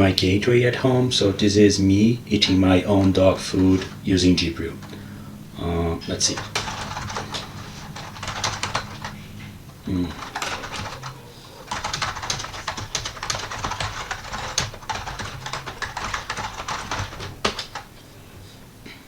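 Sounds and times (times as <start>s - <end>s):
typing on computer keyboard: 2.1s - 5.1s, 6.1s - 17.9s.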